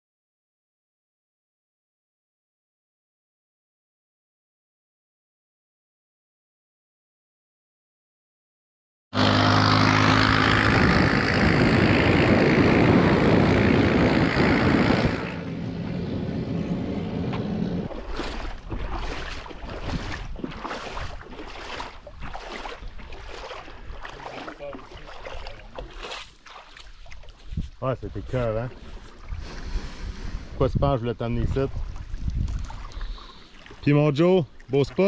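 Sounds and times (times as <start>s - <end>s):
vehicle engine running: 9.2s - 18.1s
wind noise: 10.0s - 24.2s, 27.1s - 33.4s.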